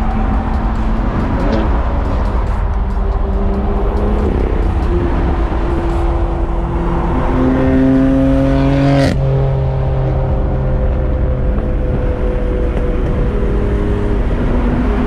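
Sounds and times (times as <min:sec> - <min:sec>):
car engine revving hard: 0:00.0 - 0:10.3.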